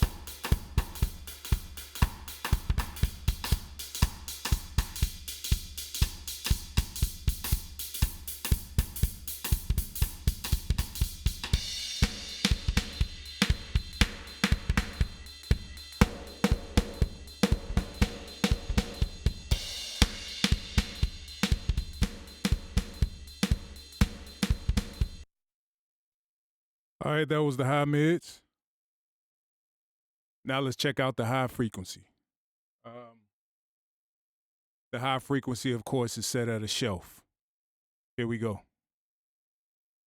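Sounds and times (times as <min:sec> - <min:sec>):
drum kit playing a beat: 0:00.0 - 0:25.2.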